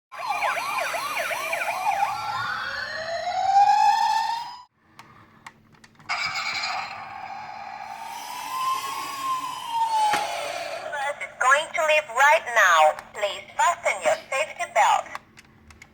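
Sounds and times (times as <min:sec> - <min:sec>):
toy electronic siren: 0:00.1 - 0:04.7, 0:06.1 - 0:10.9.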